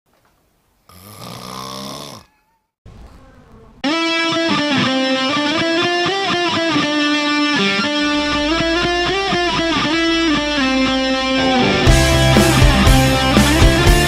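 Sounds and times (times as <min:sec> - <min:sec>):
electric guitar strumming chords: 0:03.8 - 0:14.0.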